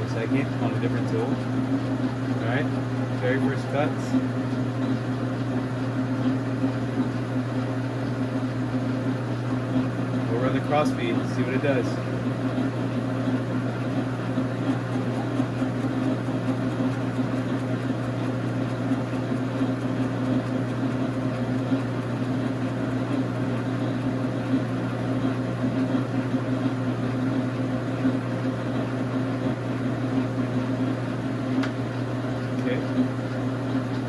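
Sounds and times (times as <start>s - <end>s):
lathe motor humming: 0.0s - 34.0s.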